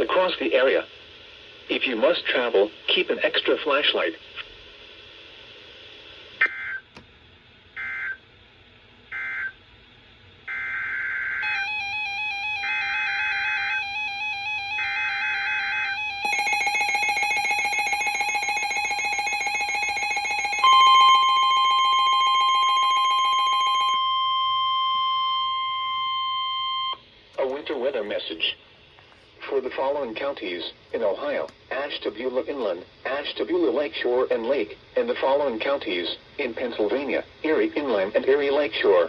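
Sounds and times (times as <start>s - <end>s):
warbling electronic alert tone: 11.4s - 24.0s
steady single-pitch attention tone: 11.4s - 27.0s.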